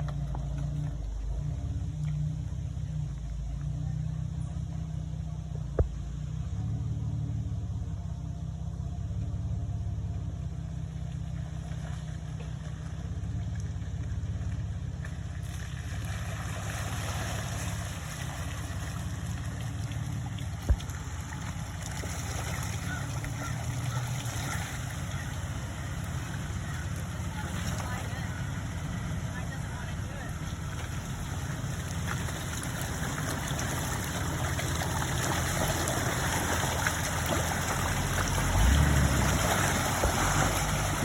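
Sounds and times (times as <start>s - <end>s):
engine low rumble: 0.0s - 41.0s
water splashing in mud hole: 10.8s - 41.0s.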